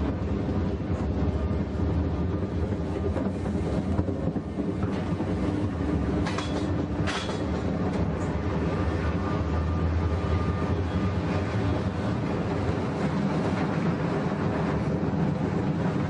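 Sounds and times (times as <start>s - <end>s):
roller coaster clatters: 0.0s - 16.0s
roller coaster rumbling on track: 0.0s - 16.0s.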